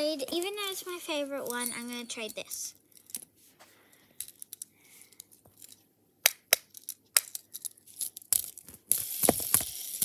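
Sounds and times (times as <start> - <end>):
fidget toy sharp snaps: 6.2 - 7.3
fidget toy clicks: 8.4 - 10.0.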